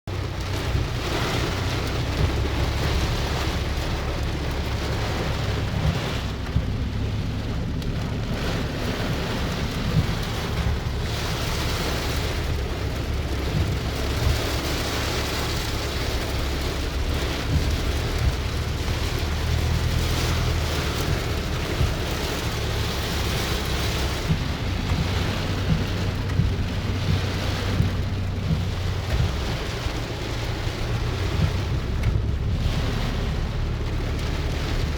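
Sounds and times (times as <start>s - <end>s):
low rumble: 0.0s - 34.9s
raindrops tapping: 0.1s - 34.9s
steady rain falling: 0.1s - 34.9s.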